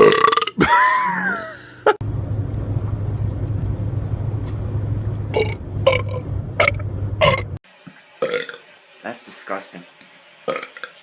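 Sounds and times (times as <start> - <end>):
car engine running: 2.0 - 7.6.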